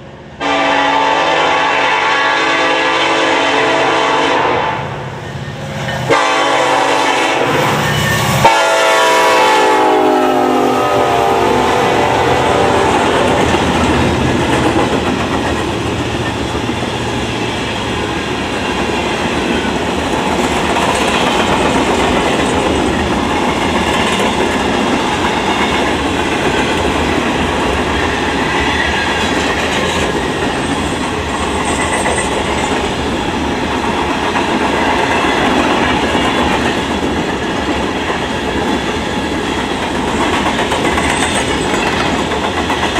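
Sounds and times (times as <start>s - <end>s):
locomotive air horn: 0.4s - 5.0s, 6.1s - 7.8s, 8.4s - 13.5s.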